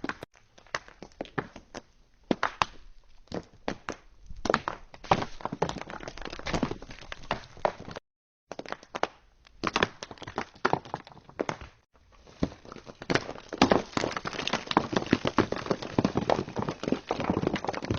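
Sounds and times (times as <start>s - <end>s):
rocks sliding and clattering: 2.4s - 17.9s.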